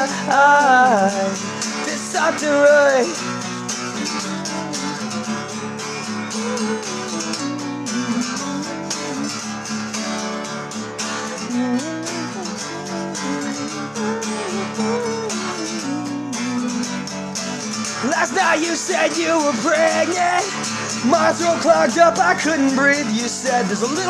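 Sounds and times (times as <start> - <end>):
acoustic guitar strumming: 0.0 - 24.0
wavering melody line: 4.0 - 9.6, 11.4 - 23.3.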